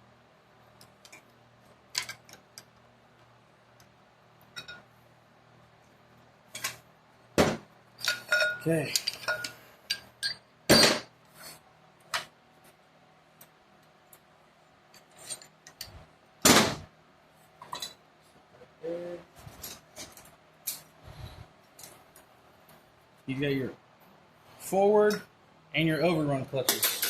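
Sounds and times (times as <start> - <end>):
metal parts clinking on workbench: 26.6 - 27.0.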